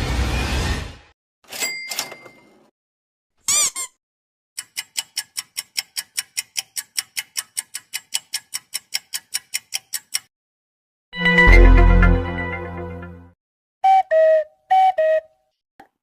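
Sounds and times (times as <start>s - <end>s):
clock ticking sound effect: 4.6s - 10.3s.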